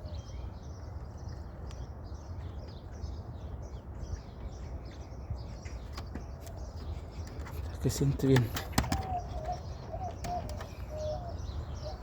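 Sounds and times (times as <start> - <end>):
small birds chirping: 0.0 - 12.0.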